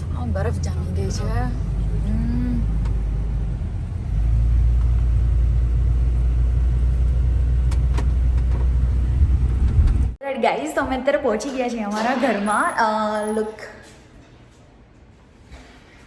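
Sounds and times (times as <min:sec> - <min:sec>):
vehicle engine and road noise: 0:00.0 - 0:10.2.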